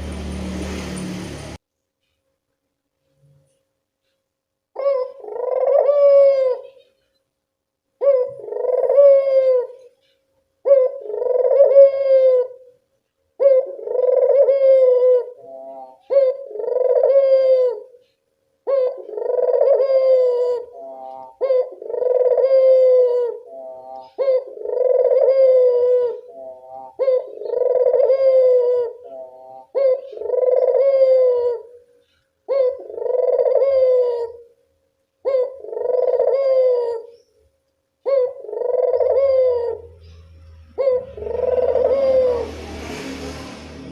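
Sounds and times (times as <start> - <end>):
dove cooing: 4.8 - 6.9, 8.0 - 9.9, 10.6 - 12.7, 13.4 - 18.0, 18.6 - 31.8, 32.5 - 34.6, 35.2 - 37.2, 38.0 - 42.6.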